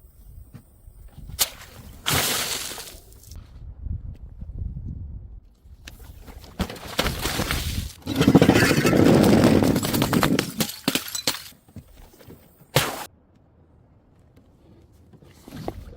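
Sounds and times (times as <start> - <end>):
glass breaking and crunching: 8.0 - 11.6.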